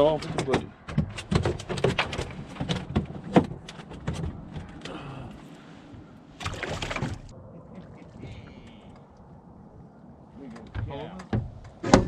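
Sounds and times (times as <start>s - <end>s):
knocks and thumps on a boat: 0.0s - 5.1s, 6.4s - 7.3s, 10.5s - 12.0s.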